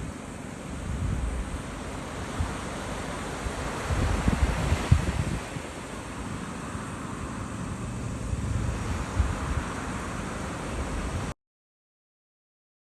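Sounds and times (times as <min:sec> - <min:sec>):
wind buffeting microphone: 0:00.0 - 0:06.2, 0:07.8 - 0:11.3
sea surf washing: 0:00.0 - 0:11.3.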